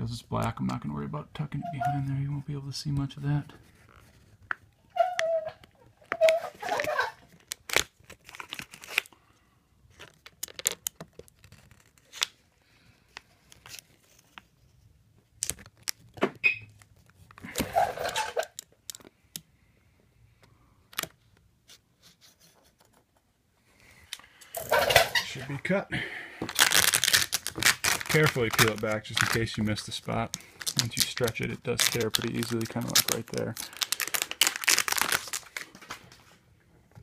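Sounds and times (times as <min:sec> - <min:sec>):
vinyl film crinkling: 0:02.2 - 0:09.3, 0:09.9 - 0:19.2, 0:26.5 - 0:36.4.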